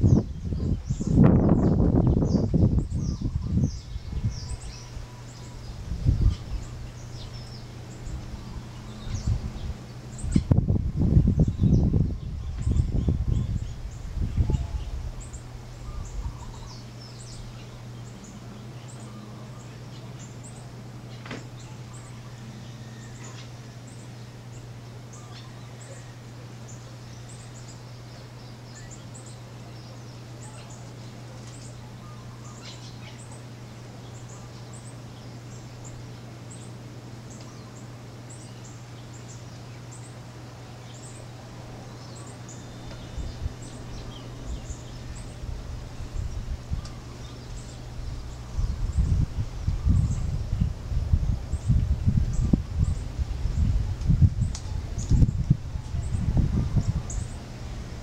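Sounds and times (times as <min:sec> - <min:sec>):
low rumbles: 0:00.0 - 0:19.0, 0:41.2 - 0:58.0
birds chirping: 0:00.0 - 0:58.0
steady low hum: 0:00.0 - 0:58.0.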